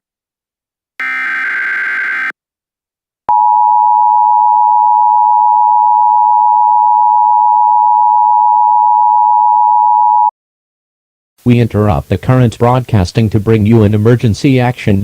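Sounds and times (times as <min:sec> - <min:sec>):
loud two-tone alarm: 0:01.0 - 0:02.4.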